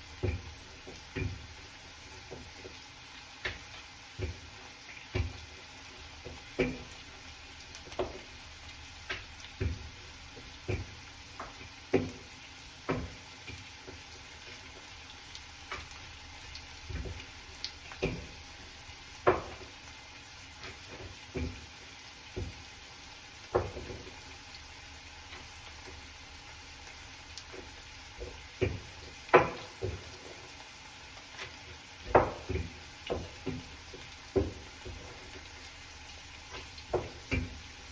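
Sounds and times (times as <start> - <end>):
faint steady hiss: 0.0 - 37.9
short kitchen knocks: 32.0 - 33.7.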